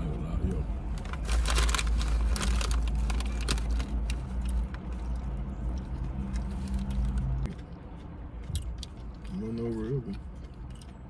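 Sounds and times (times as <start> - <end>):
car engine idling: 0.0 - 7.5.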